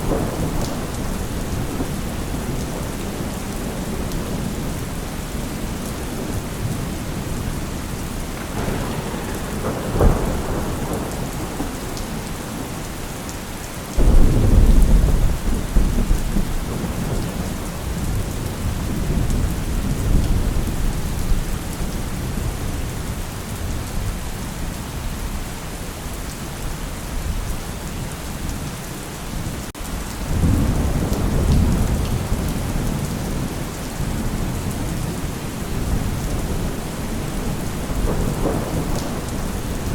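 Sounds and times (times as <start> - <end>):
rolling thunder: 0.0 - 13.2, 14.0 - 24.2, 29.8 - 39.9
steady rain falling: 0.0 - 39.9.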